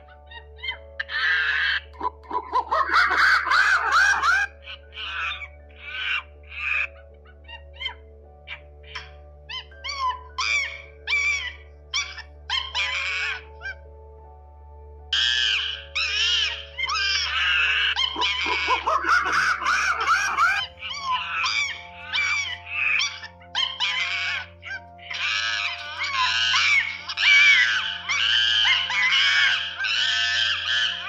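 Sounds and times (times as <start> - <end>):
background music: 0.0 - 31.0
monkeys screeching: 0.1 - 13.9, 15.1 - 31.0
lower swooping monkey calls: 0.6 - 13.8, 15.1 - 31.0.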